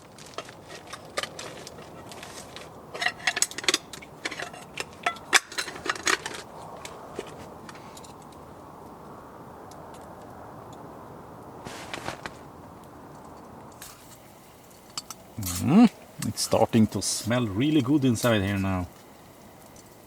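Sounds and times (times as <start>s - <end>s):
steady low hiss: 0.0s - 20.0s
cooking pot and utensils clinking: 2.9s - 6.9s.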